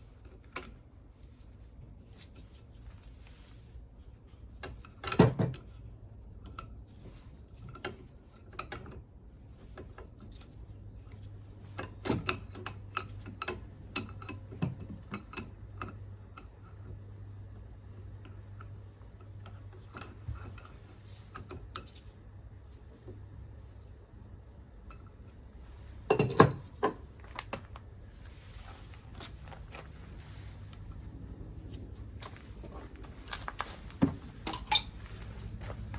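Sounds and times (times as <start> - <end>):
steady low hum: 5.6 - 35.9
metal parts clinking and knocking: 26.1 - 27.8, 33.0 - 35.1.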